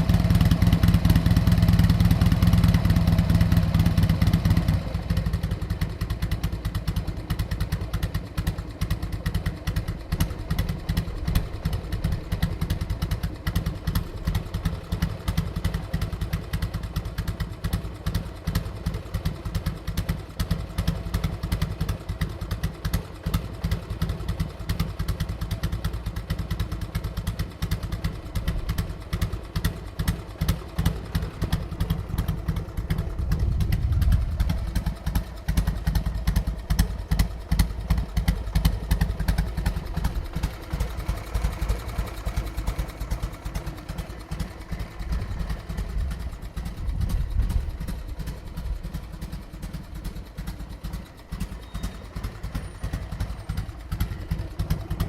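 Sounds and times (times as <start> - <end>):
motorcycle engine idling: 0.0 - 55.0.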